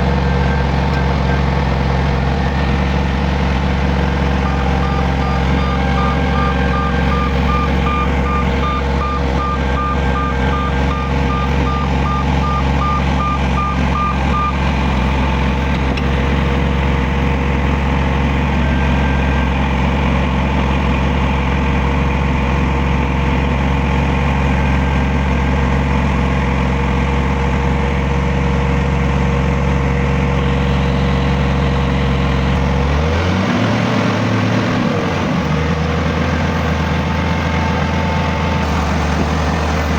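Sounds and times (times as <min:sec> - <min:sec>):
diesel construction machinery running: 0:00.0 - 0:39.9
reversing alarm beeping: 0:02.5 - 0:15.6.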